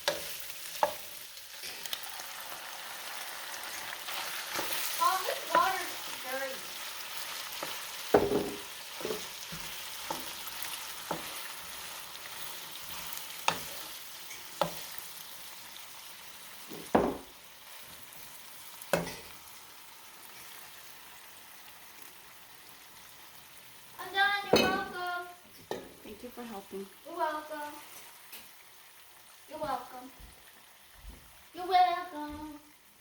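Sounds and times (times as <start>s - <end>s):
food sizzling in a pan: 0.0s - 33.0s
utensil knocking against pan: 8.1s - 9.2s, 16.8s - 17.3s.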